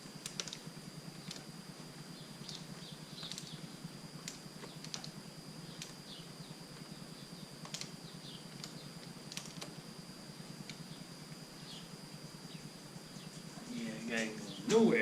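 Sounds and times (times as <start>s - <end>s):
steady low hum: 0.0s - 15.0s
light clicks of small parts: 2.4s - 3.6s, 4.2s - 5.2s, 7.6s - 7.9s.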